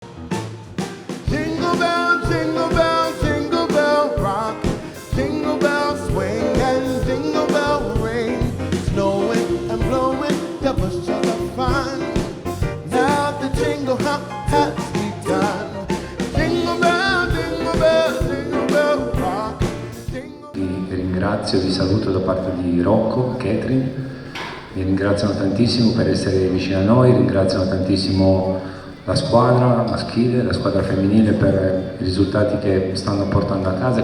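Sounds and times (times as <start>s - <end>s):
person singing: 1.3s - 21.4s.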